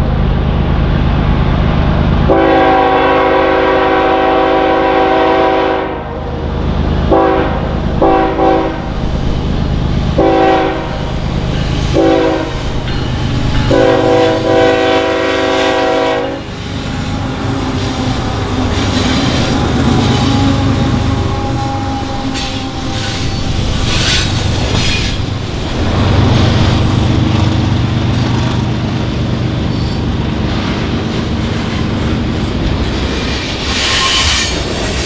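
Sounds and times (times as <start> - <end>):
freight train rumble and clatter: 0.0 - 35.0
locomotive air horn blasts: 2.3 - 6.3, 7.1 - 8.9, 10.2 - 11.1, 11.9 - 12.6, 13.7 - 24.2.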